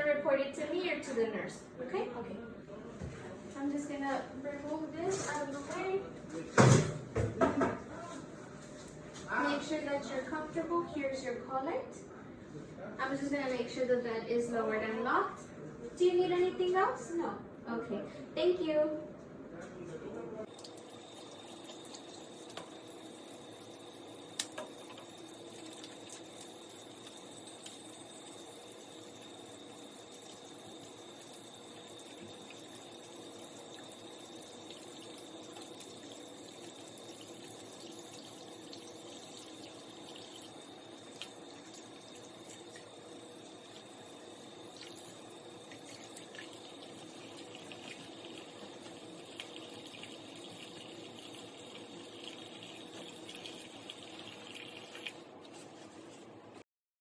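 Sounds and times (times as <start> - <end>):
water running from a tap: 20.5 - 55.6.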